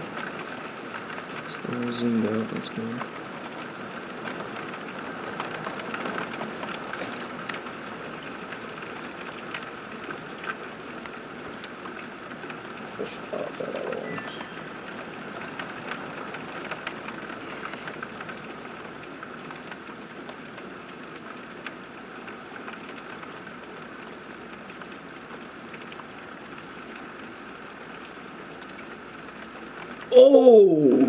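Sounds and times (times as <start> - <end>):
heavy rain pouring: 0.0 - 31.0.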